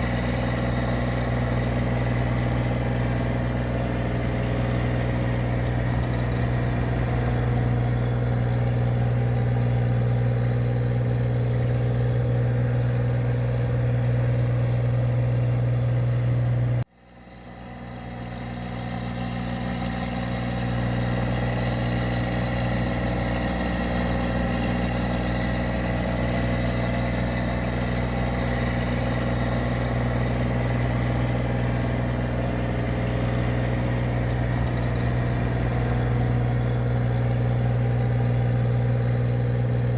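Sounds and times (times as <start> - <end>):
machine engine low hum: 0.0 - 39.9.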